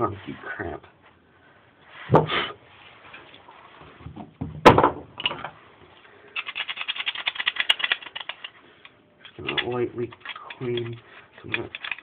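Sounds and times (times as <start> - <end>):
rattling clicks: 9.2 - 12.0.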